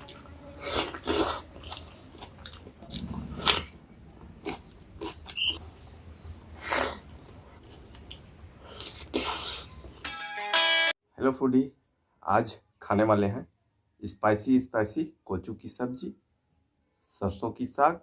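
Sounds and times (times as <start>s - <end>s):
faint low hum: 0.0s - 6.5s.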